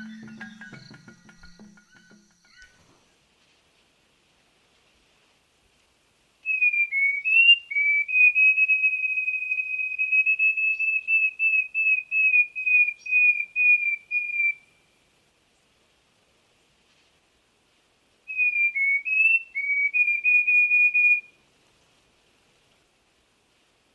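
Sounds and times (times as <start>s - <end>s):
songbird singing whistled notes: 0.0s - 3.0s, 6.4s - 14.9s, 18.3s - 21.4s.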